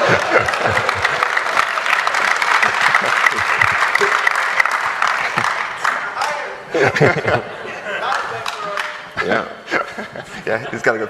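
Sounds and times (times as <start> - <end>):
audience laughter: 0.0 - 4.3, 6.7 - 11.0
audience applauding and cheering: 0.0 - 7.2, 8.0 - 9.2.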